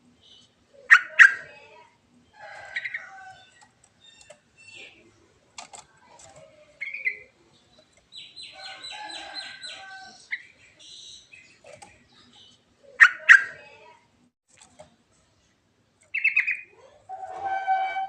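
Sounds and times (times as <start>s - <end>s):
bird singing varied song: 2.2s - 5.1s, 6.6s - 13.6s, 16.1s - 16.7s.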